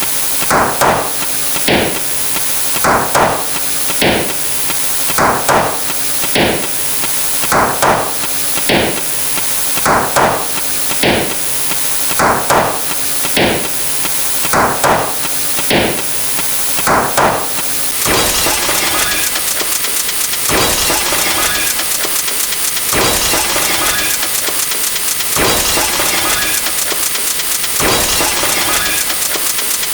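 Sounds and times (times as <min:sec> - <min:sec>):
hammer striking: 0:07.5 - 0:08.1, 0:09.8 - 0:10.4, 0:12.2 - 0:12.8, 0:14.5 - 0:16.0, 0:16.8 - 0:29.9.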